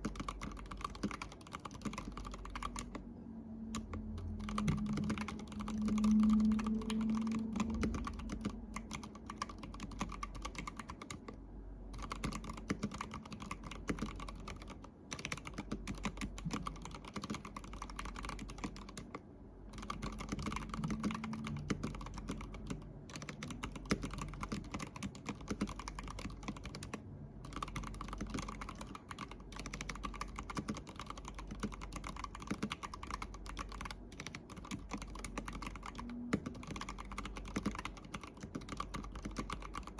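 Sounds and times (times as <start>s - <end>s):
fast typing on mechanical keyboard: 0.0s - 3.1s, 3.7s - 39.9s
low hum: 0.4s - 12.3s, 19.4s - 24.7s, 25.8s - 28.8s, 35.3s - 37.6s.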